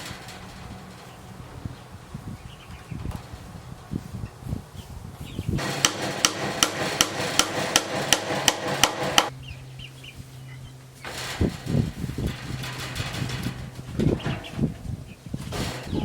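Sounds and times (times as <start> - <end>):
hammer blows: 5.6 - 9.3.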